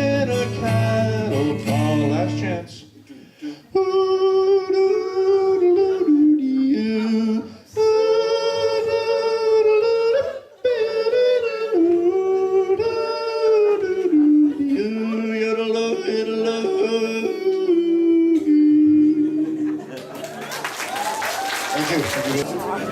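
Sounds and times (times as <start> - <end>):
man yodeling: 3.6 - 19.9.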